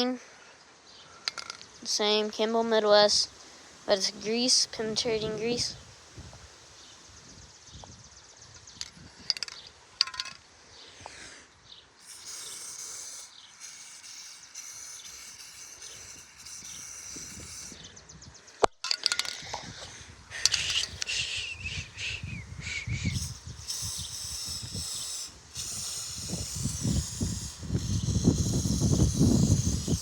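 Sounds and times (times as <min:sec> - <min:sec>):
aerosol can spraying hiss: 0:12.0 - 0:17.8, 0:20.5 - 0:22.3, 0:23.0 - 0:30.0.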